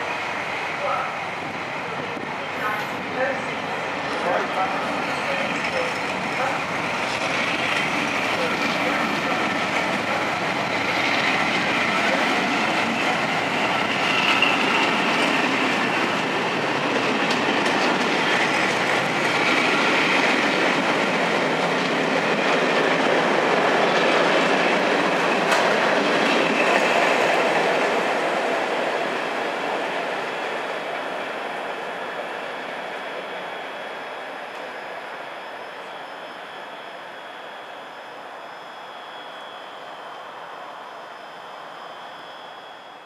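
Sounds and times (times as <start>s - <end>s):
train rumbling on rails: 0.0s - 43.0s
faint high squealing: 32.0s - 43.0s.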